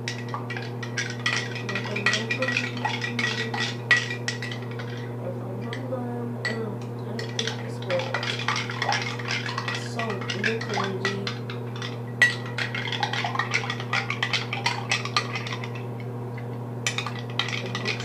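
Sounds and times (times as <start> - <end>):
steady low hum: 0.0 - 18.0
utensil scraping against bowl: 0.3 - 5.9, 7.2 - 15.8.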